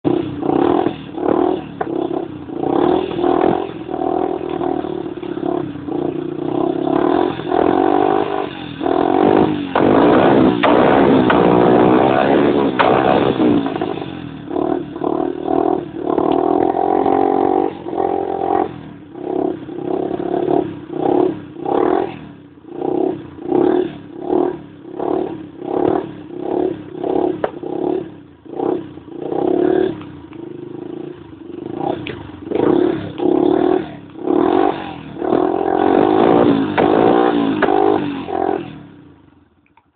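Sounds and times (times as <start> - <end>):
motorcycle engine revving: 0.0 - 39.5.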